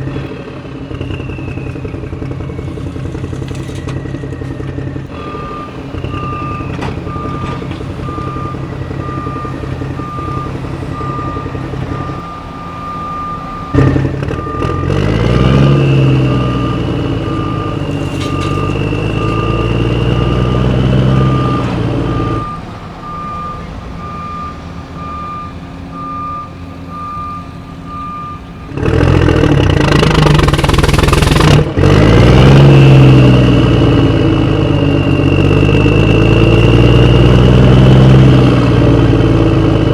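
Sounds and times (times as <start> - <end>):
reversing alarm beeping: 0.0 - 39.5
engine running and revving: 0.0 - 39.9.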